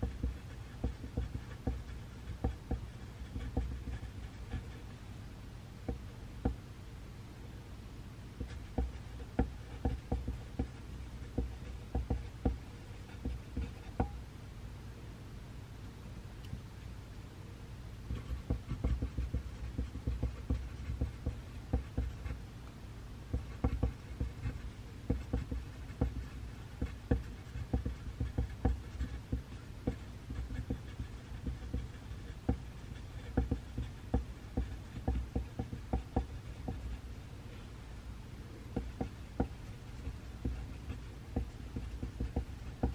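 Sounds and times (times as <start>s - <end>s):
pencil writing on paper: 0.0s - 5.0s, 8.4s - 14.2s, 18.1s - 22.4s, 23.3s - 37.6s, 38.7s - 42.9s
low room hum: 0.0s - 42.9s.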